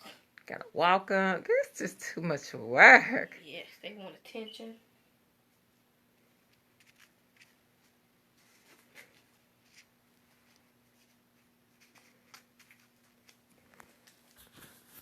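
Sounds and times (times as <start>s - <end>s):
faint steady hum: 0.0s - 15.0s
faint soft clicks and rustles: 5.5s - 15.0s.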